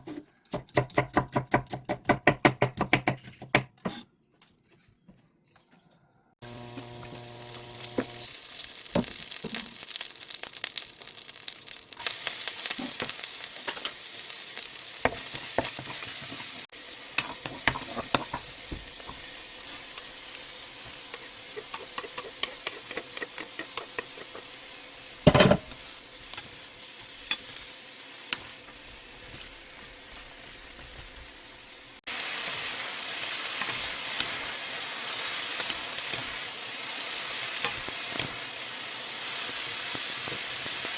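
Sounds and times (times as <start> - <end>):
food sizzling in a frying pan: 6.4 - 40.9
spatula scraping a pan: 17.2 - 20.0.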